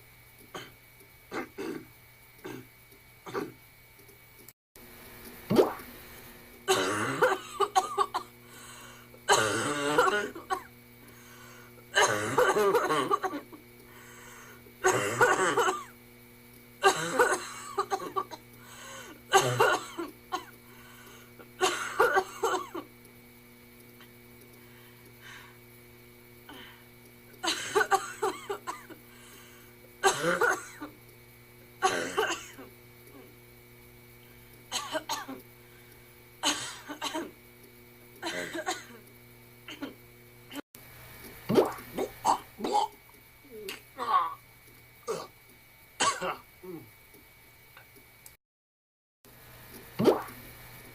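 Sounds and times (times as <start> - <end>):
man coughing harshly: 6.7 - 8.3, 9.3 - 10.7, 12.0 - 13.4, 14.8 - 15.9, 16.8 - 18.4, 19.3 - 20.5, 21.6 - 22.8, 27.4 - 28.9, 30.0 - 30.9, 31.8 - 32.6, 38.2 - 38.9, 46.0 - 46.8.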